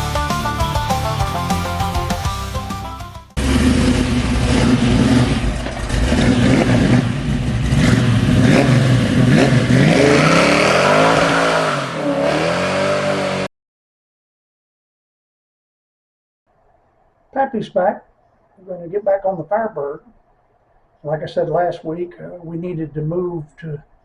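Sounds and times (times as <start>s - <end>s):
car engine revving: 3.3s - 13.5s.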